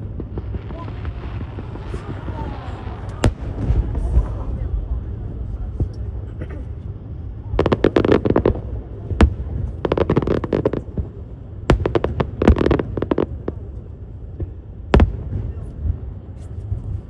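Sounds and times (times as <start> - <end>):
fireworks crackling bangs: 0.0 - 4.9, 7.6 - 13.8, 14.4 - 16.8
low steady rumble: 0.0 - 17.0.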